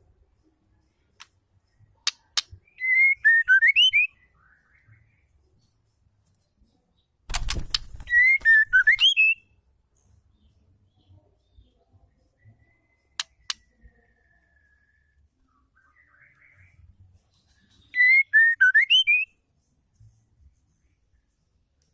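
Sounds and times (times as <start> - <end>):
bird whistled call: 2.7 - 4.8, 8.1 - 9.4, 18.0 - 19.3
bird sharp clicking notes: 7.3 - 9.4.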